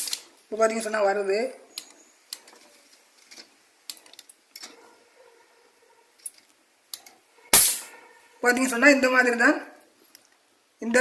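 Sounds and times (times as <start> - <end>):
electric sparks snapping: 7.6 - 7.8
loud spark crack: 7.6 - 7.9.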